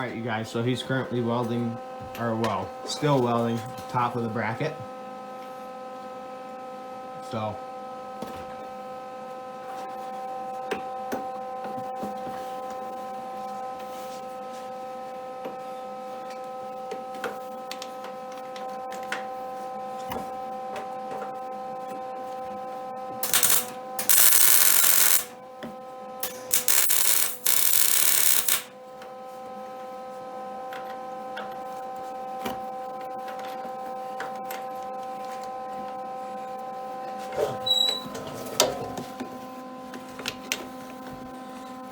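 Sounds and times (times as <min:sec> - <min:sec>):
welding arc crackling: 0:23.2 - 0:25.3, 0:26.2 - 0:28.7
steady electrical hum: 0:23.2 - 0:25.4, 0:26.2 - 0:29.3.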